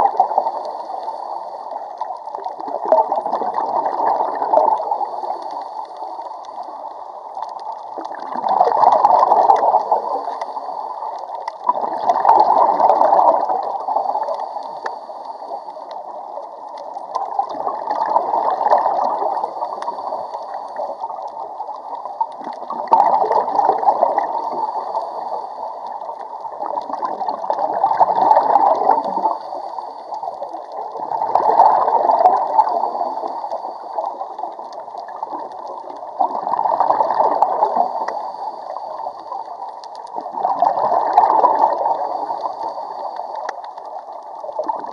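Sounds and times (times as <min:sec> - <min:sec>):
bubbles gurgling underwater: 0:00.0 - 0:44.9
diver breathing through regulator: 0:37.7 - 0:39.7.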